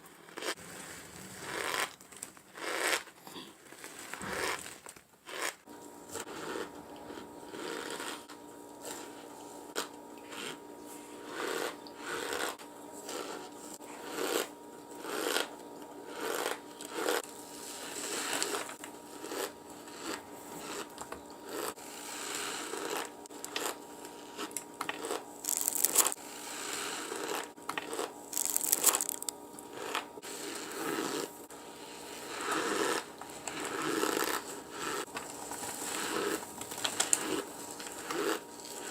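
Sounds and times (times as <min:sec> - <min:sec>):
squeaky crunches of chewing cornstarch: 0:00.1 - 0:03.1, 0:03.7 - 0:05.6, 0:21.5 - 0:31.2.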